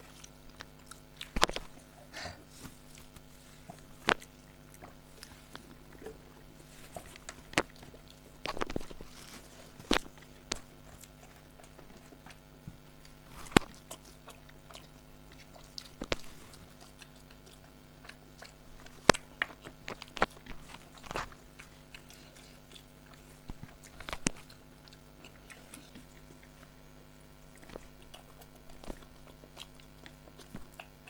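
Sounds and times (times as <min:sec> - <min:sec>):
faint steady hum: 0:00.0 - 0:31.0
person chewing food: 0:00.0 - 0:31.0
mouth clicks and smacks: 0:00.2 - 0:01.9.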